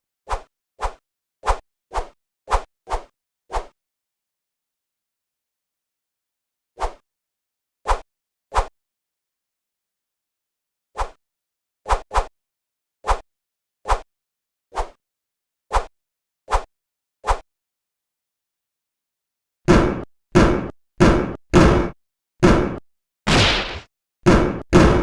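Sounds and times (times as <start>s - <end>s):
punch hits with low thud: 19.7s - 25.0s.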